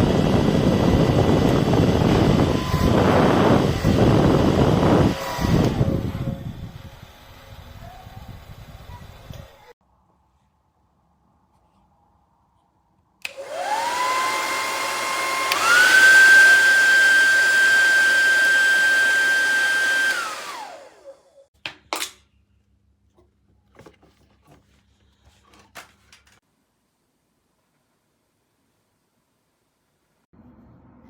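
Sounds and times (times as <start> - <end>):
hair dryer motor whining: 0.0 - 8.7, 13.2 - 21.5.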